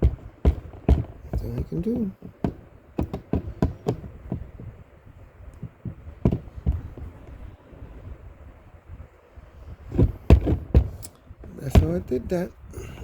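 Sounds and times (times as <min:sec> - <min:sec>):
knocks on plastic crate: 0:00.0 - 0:04.5, 0:05.6 - 0:07.1, 0:09.9 - 0:11.0, 0:11.7 - 0:12.0.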